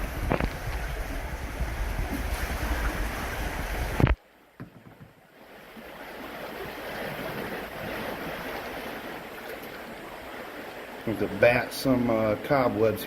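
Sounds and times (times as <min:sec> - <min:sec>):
rumble on microphone: 0:00.0 - 0:04.2
rushing creek water: 0:00.0 - 0:13.0.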